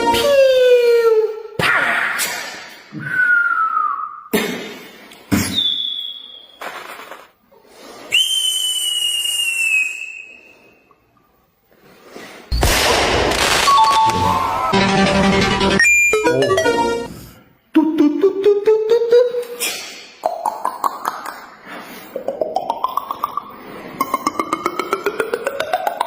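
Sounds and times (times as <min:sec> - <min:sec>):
whistle tone: 0:03.0 - 0:04.3, 0:05.4 - 0:06.8, 0:08.0 - 0:11.0, 0:15.8 - 0:16.4
comic hits: 0:12.5 - 0:17.1.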